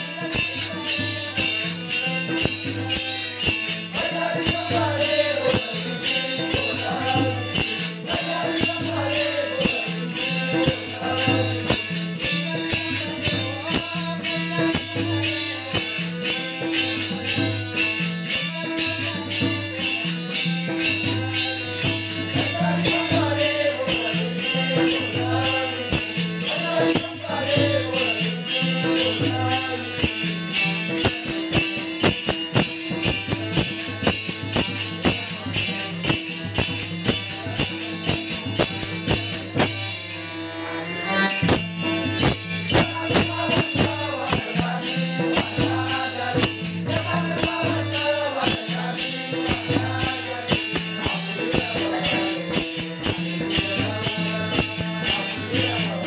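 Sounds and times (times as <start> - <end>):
hand cymbals clashing: 0.0 - 40.3, 41.3 - 56.0.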